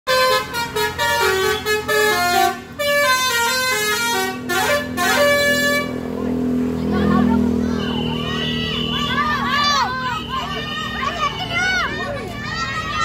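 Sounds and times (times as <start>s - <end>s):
multi-trumpet air horn tune: 0.1s - 6.0s.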